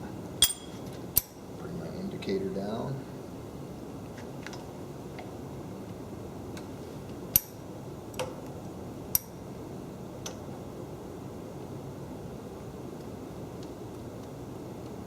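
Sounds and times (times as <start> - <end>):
steady low hum: 0.0 - 15.0
metal parts clicking and clinking: 0.4 - 1.3.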